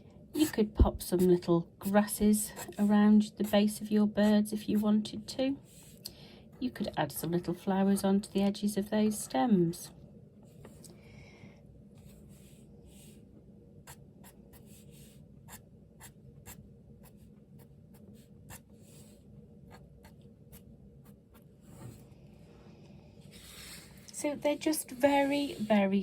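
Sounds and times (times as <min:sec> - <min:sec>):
pen scratching on paper: 0:00.4 - 0:04.9, 0:13.8 - 0:19.1.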